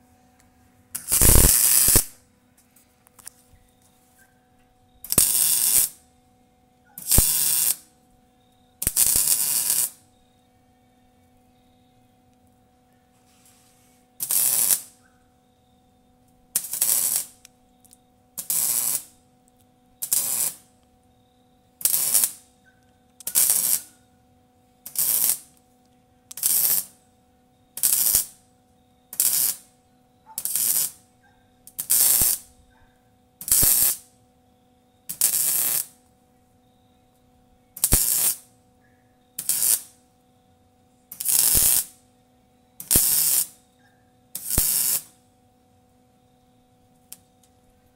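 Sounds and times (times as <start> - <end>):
arc welder bursts: 0.9 - 2.2, 5.0 - 6.0, 7.0 - 8.0, 8.8 - 10.1, 14.0 - 15.0, 16.5 - 17.5, 18.4 - 19.2, 20.0 - 20.8, 21.8 - 22.5, 23.2 - 24.0, 24.8 - 25.6, 26.3 - 27.0, 27.7 - 28.5, 29.1 - 32.6, 33.4 - 34.2, 35.1 - 36.1, 37.8 - 38.6, 39.4 - 40.1, 41.1 - 42.0, 42.8 - 43.6, 44.3 - 45.2.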